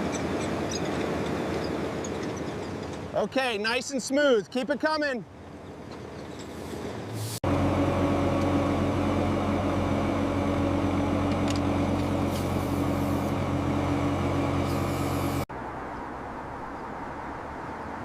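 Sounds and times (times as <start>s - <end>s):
paving machine engine running: 5.4s - 15.5s.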